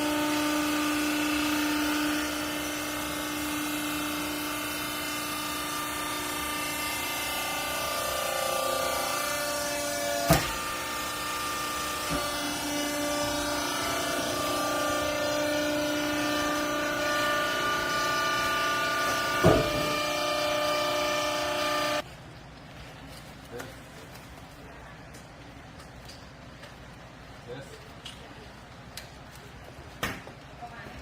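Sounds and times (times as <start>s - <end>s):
hydraulic baler whine: 0.0s - 22.0s
sharp knocks: 19.1s - 20.1s.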